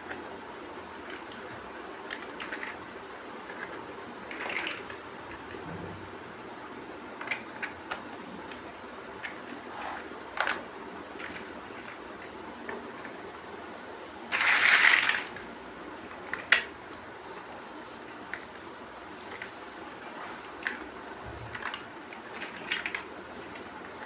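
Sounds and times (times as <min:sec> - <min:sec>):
plastic blocks clicking together: 0:02.1 - 0:02.8, 0:14.3 - 0:15.4, 0:21.5 - 0:23.7
plastic pieces rattling: 0:14.3 - 0:15.4, 0:21.5 - 0:23.7.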